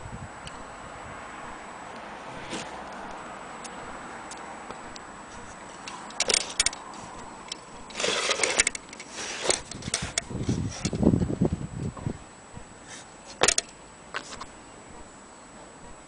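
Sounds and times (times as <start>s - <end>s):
clock clicking and rattling: 6.1s - 6.8s.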